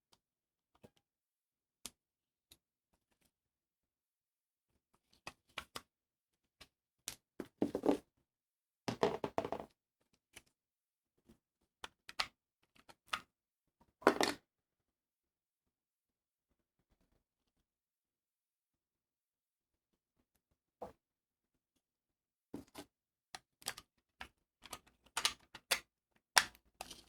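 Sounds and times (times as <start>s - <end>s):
plastic parts clicking and knocking: 23.4s - 27.0s.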